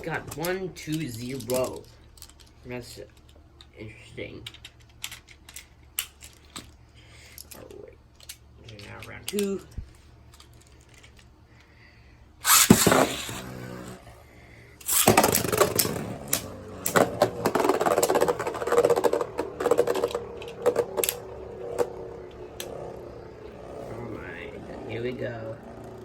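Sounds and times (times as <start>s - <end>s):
spinning tops clacking: 12.4s - 14.0s, 14.8s - 23.8s
spinning tops whirring: 12.4s - 26.0s.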